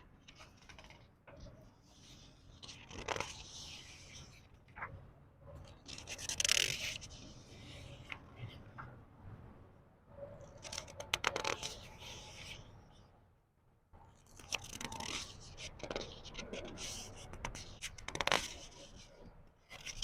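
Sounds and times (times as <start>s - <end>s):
book pages turning: 0.2s - 4.9s, 5.7s - 8.8s, 10.5s - 12.7s, 14.2s - 20.0s.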